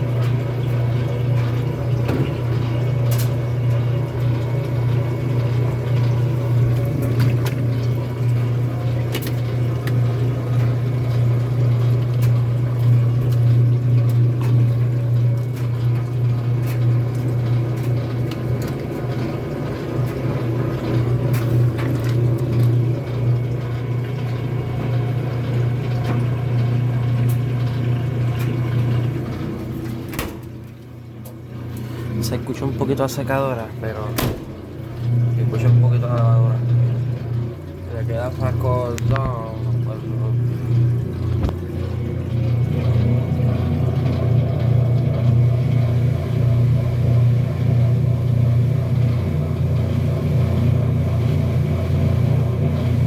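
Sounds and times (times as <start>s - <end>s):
running water: 0.0s - 53.0s
washing machine pump humming: 0.0s - 53.0s.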